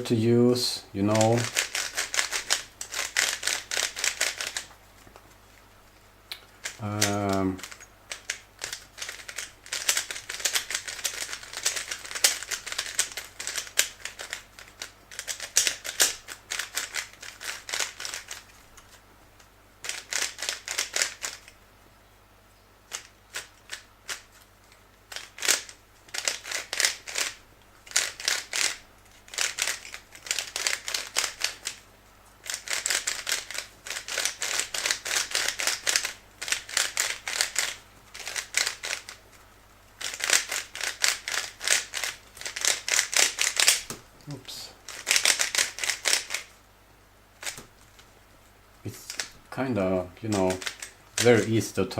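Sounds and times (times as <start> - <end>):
plastic puzzle cube clicking: 1.1 - 4.7, 6.6 - 18.9, 19.8 - 21.5, 22.9 - 24.2, 25.1 - 31.8, 32.4 - 39.2, 40.0 - 44.0, 44.9 - 46.5, 47.4 - 47.7, 50.3 - 51.5.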